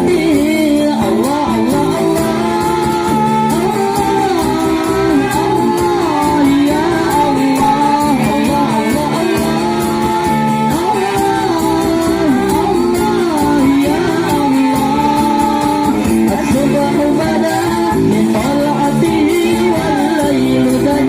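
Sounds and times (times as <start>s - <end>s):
devotional song with accompaniment: 0.0s - 21.0s
steady percussion beat: 0.0s - 21.0s.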